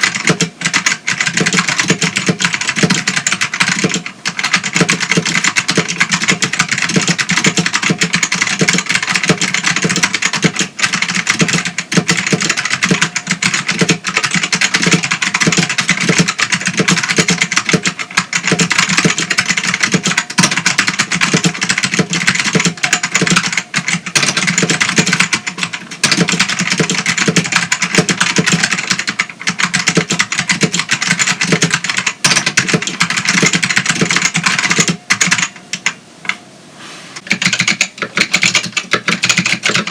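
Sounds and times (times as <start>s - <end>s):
fast clicky keyboard typing: 0.0s - 36.0s, 37.2s - 39.9s.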